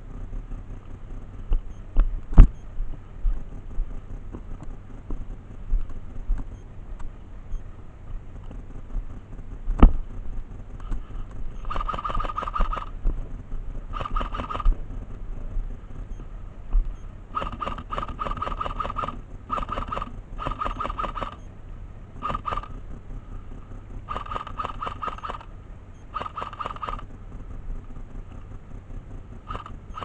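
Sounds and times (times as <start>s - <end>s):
low rumble: 0.0s - 26.2s, 26.8s - 30.0s
airsoft gun full-auto burst: 11.6s - 13.0s, 13.9s - 14.7s, 17.3s - 21.5s, 22.2s - 22.8s, 24.1s - 25.5s, 26.1s - 27.1s, 29.4s - 30.0s.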